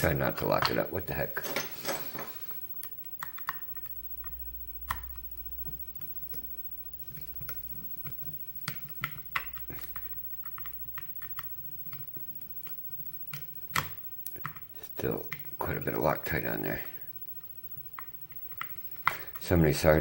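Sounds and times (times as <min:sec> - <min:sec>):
faint low hum: 0:00.0 - 0:20.0
small metal clicks and taps: 0:02.8 - 0:06.5, 0:07.1 - 0:14.7, 0:17.7 - 0:19.5.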